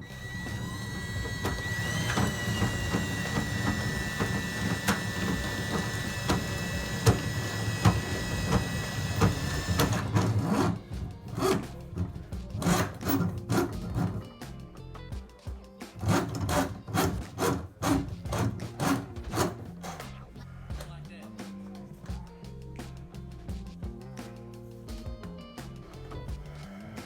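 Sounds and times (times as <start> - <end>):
drain cleaning machine motor whine: 0.0 - 14.2
cable knocking and scraping in drain: 0.0 - 14.3, 16.0 - 20.2.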